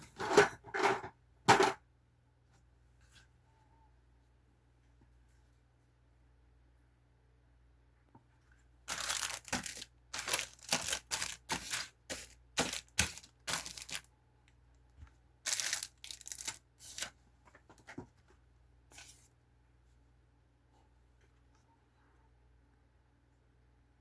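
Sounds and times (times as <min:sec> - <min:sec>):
packaging crinkling: 0:08.9 - 0:14.1, 0:15.5 - 0:17.1.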